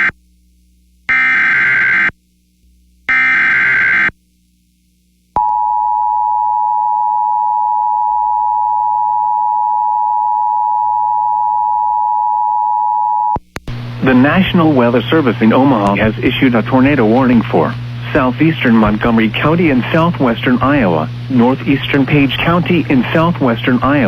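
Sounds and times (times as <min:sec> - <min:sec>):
emergency attention tone: 0:05.4 - 0:13.4.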